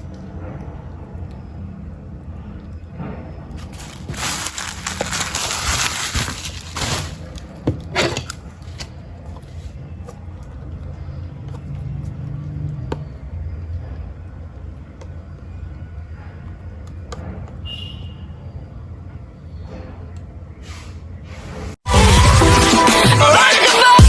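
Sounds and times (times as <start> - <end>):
packaging tearing and rustling: 3.6 - 7.6.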